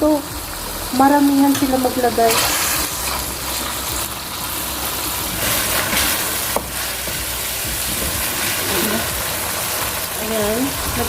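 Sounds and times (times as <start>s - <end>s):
meat sizzling in oil: 0.0s - 11.0s.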